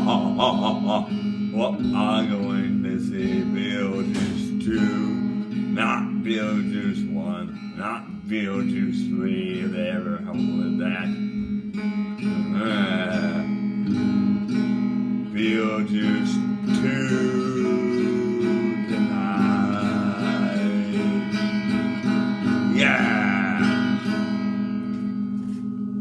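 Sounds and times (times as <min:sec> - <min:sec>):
acoustic guitar strumming: 0:00.0 - 0:26.0
sliding high guitar notes: 0:00.0 - 0:26.0
low drone: 0:16.4 - 0:25.3.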